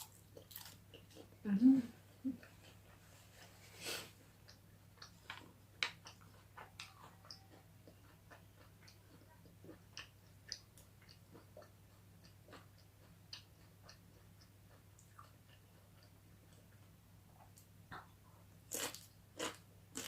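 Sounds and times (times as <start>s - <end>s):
chewing on bones: 4.4s - 16.6s.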